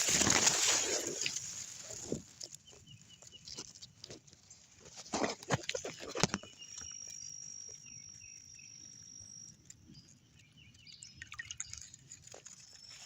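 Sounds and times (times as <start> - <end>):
insect trilling: 5.3 - 13.0.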